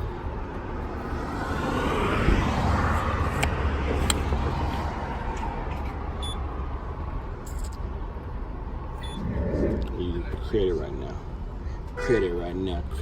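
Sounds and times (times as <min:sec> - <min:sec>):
car engine and road rumble: 0:00.0 - 0:13.0.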